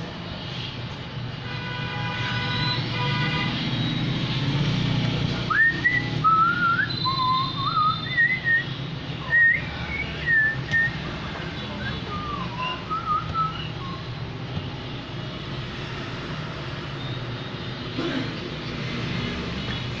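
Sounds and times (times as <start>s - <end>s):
person whistling a tune: 5.5s - 8.7s, 9.3s - 11.0s.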